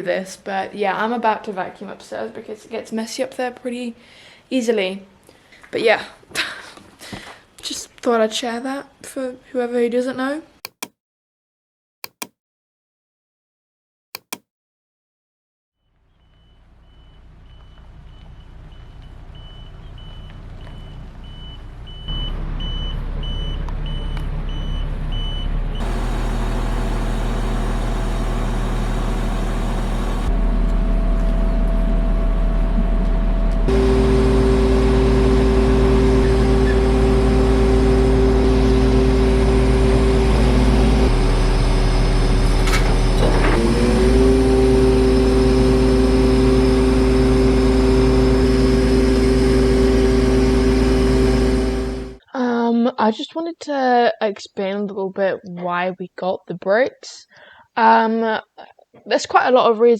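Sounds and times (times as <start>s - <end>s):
reversing alarm beeping: 16.2s - 27.4s
truck engine humming: 16.7s - 52.2s.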